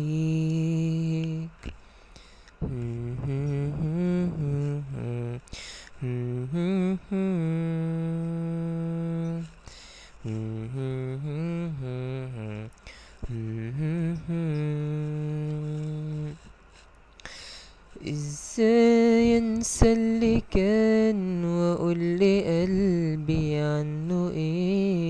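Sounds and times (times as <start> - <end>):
person humming a melody: 0.0 - 1.7, 2.6 - 9.6, 10.2 - 16.5, 18.0 - 25.0
breaths: 1.7 - 2.7, 5.5 - 6.0, 9.6 - 10.3, 12.8 - 13.3, 16.4 - 18.0.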